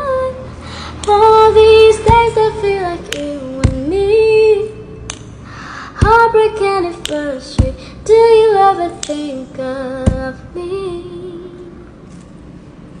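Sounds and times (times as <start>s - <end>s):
girl singing: 0.0s - 11.9s
sharp low thumps: 2.0s - 2.5s, 3.6s - 4.0s, 6.0s - 6.4s, 7.6s - 7.9s.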